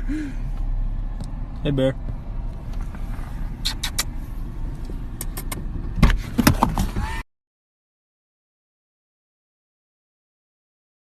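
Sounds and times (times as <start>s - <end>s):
sharp clicks: 4.8s - 5.7s.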